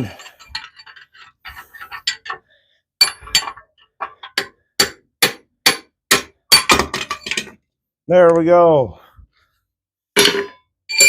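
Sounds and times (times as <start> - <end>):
hammer striking metal: 4.4 - 6.9.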